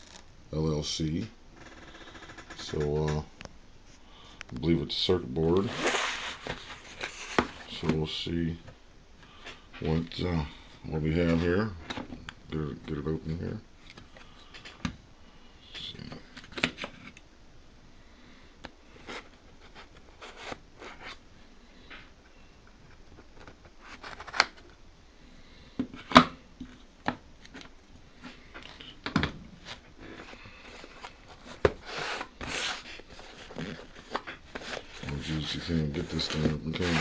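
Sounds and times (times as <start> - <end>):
package clicks and scrapes: 23.1 - 24.7, 29.6 - 35.2.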